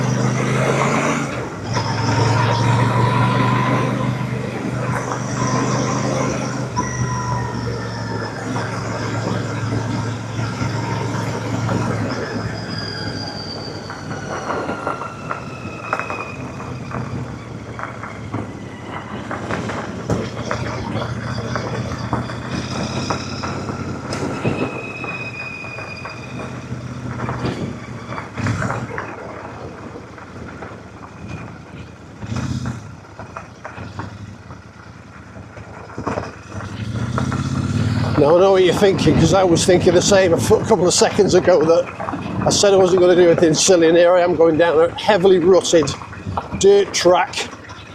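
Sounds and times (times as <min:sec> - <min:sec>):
high squeals sliding down: 0:00.0 - 0:29.3
motorcycle knocking and rattling: 0:25.8 - 0:47.9
motorcycle engine at low revs: 0:26.5 - 0:40.3.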